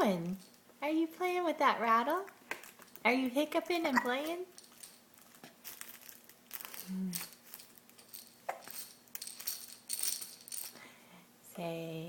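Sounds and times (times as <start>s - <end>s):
baby hiccup: 3.9s - 4.1s
toy rattle clicking: 6.6s - 10.8s.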